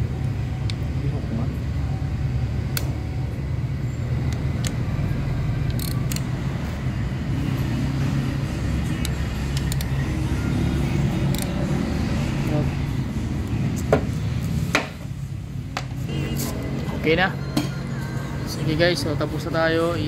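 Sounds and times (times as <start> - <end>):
engine rumble: 0.0 - 20.0
hand tools clicking on metal: 5.6 - 6.3.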